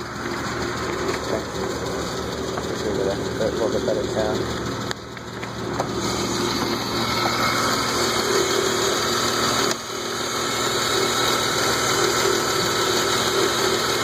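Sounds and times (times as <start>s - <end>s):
car engine idling: 0.0s - 14.0s
engine lifter tick: 4.8s - 5.9s.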